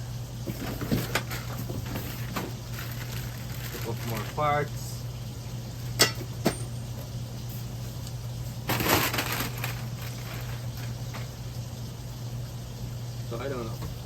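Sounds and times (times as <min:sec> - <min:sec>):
packaging crunching rustle: 0:00.6 - 0:04.7, 0:08.7 - 0:11.1.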